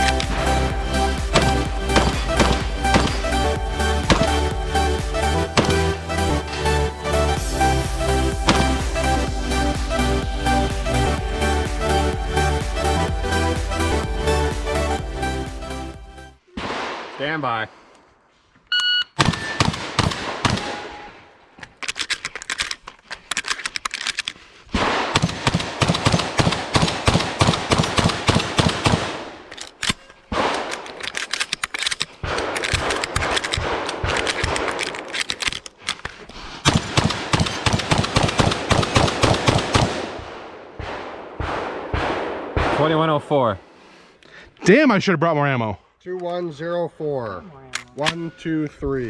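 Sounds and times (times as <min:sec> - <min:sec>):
shotgun firing rapid shots: 0:00.0 - 0:06.6, 0:07.9 - 0:10.3, 0:16.6 - 0:17.4, 0:19.2 - 0:21.2, 0:24.7 - 0:35.8, 0:36.6 - 0:43.2
shot timer beep: 0:18.7 - 0:19.2.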